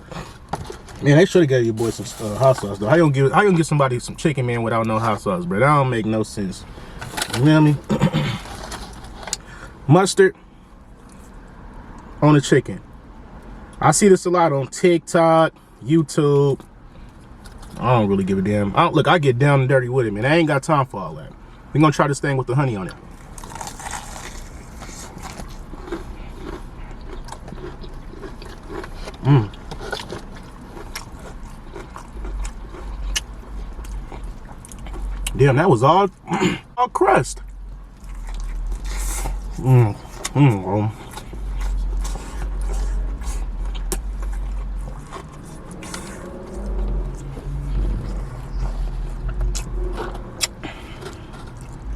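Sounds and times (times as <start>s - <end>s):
man chewing crunchy food: 6.7s - 9.6s, 23.0s - 35.4s, 37.4s - 51.9s
steady low rumble: 22.9s - 51.9s.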